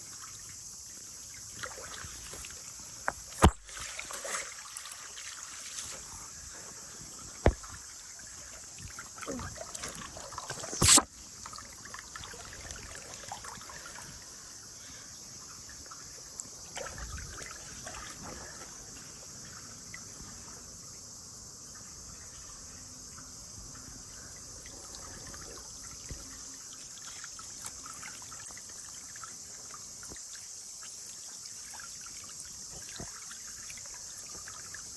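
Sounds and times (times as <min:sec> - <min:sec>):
water trickling: 0:00.0 - 0:34.9
sharp pops: 0:03.0 - 0:03.7, 0:07.4 - 0:07.8, 0:10.5 - 0:11.1
water balloons bursting and splashing: 0:03.2 - 0:04.5, 0:07.4 - 0:07.8, 0:09.2 - 0:11.2.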